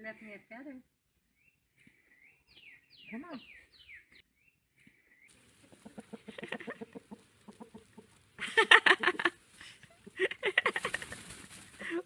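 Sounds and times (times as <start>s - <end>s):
chicken clucking: 5.3s - 11.4s.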